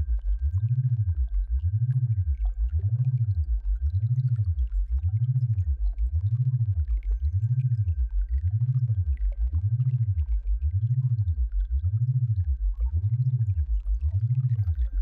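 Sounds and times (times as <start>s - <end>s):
synthesized low gliding tone: 0.0s - 15.0s.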